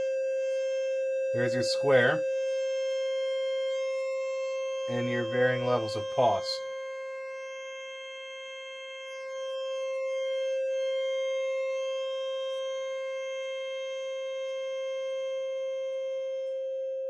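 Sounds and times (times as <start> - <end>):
buzzy synthesizer note: 1.4 - 2.3, 3.7 - 6.7.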